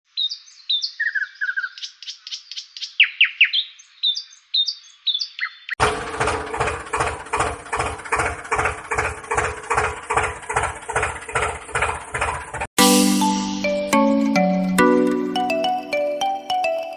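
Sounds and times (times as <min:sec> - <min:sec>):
birds chirping: 0:00.1 - 0:05.8
rhythmic beat with held tone: 0:12.8 - 0:16.9.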